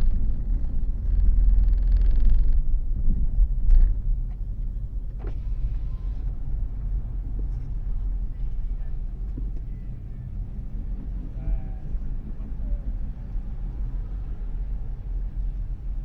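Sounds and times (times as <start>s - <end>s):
fine rapid rattle: 0.0s - 4.2s
motorcycle engine rumbling: 0.0s - 9.6s.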